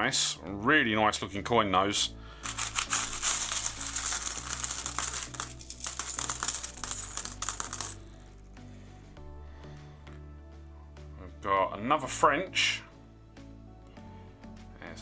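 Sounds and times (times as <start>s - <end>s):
coins clinking and jingling: 2.4s - 8.0s.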